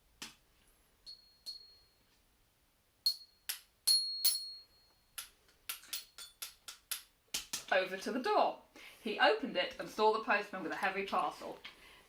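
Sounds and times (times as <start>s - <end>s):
xylophone bars struck: 3.0s - 5.3s.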